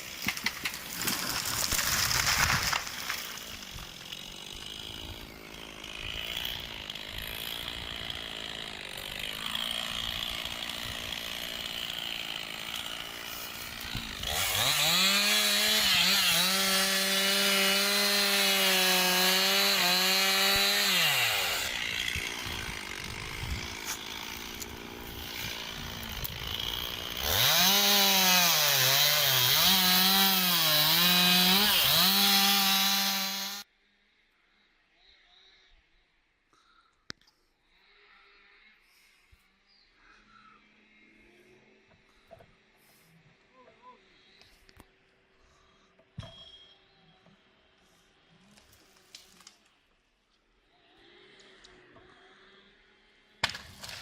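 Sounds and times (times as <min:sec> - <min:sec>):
chainsaw cutting timber: 0:00.0 - 0:33.7.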